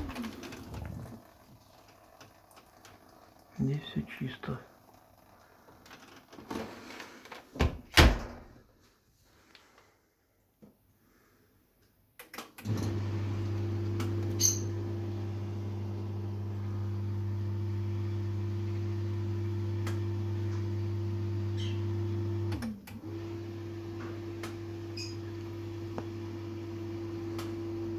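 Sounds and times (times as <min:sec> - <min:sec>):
dishwasher motor hum: 0:00.0 - 0:05.3, 0:12.7 - 0:27.9.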